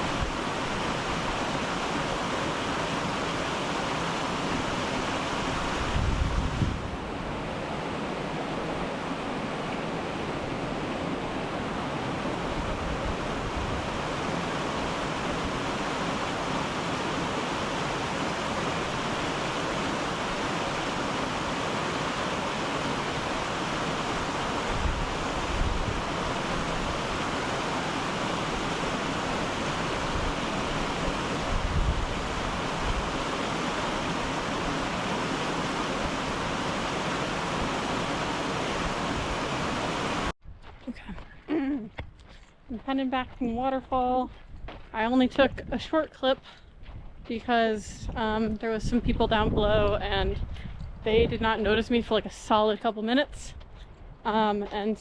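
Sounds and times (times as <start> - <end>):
waterfall roaring: 0.0 - 40.3
wind bumps on microphone: 4.6 - 9.2, 9.8 - 17.7, 23.1 - 41.1, 42.8 - 55.0.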